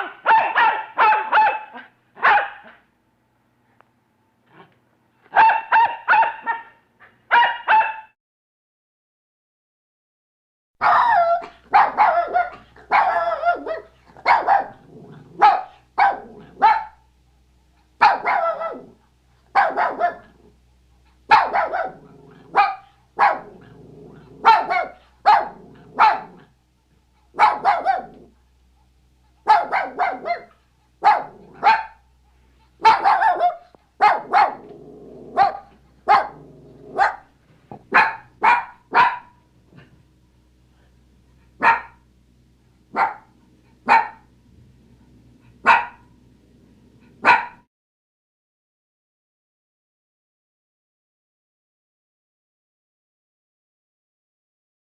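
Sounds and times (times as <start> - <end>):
dog barking: 0.0 - 2.9, 5.3 - 8.2, 10.8 - 17.0, 18.0 - 20.4, 21.3 - 26.5, 27.4 - 28.3, 29.4 - 32.0, 32.8 - 39.9, 41.6 - 42.0, 42.9 - 44.3, 45.6 - 46.1, 47.2 - 47.7.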